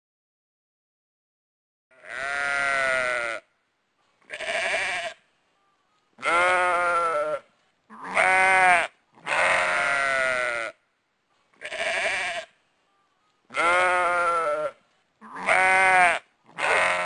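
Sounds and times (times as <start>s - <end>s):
animal bleating: 2.0s - 3.5s, 4.3s - 5.2s, 6.2s - 10.8s, 11.6s - 12.6s, 13.5s - 17.0s.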